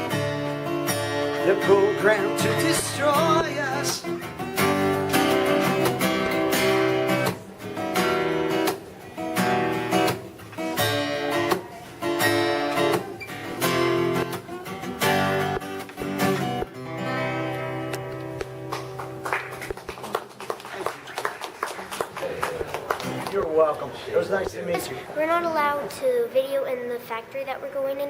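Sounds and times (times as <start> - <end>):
acoustic guitar strumming chords: 0.0 - 19.7.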